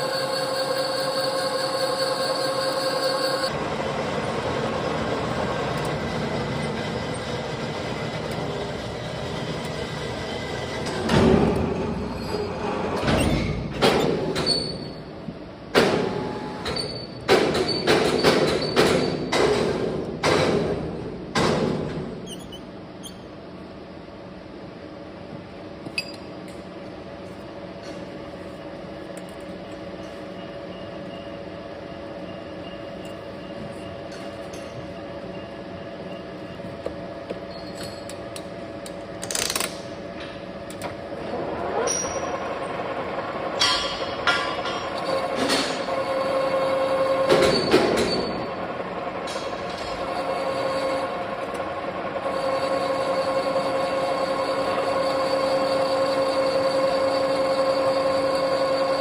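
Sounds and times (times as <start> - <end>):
metal lathe humming: 0.0 - 10.7, 49.9 - 59.0
metal knocks and clanks: 43.6 - 45.9.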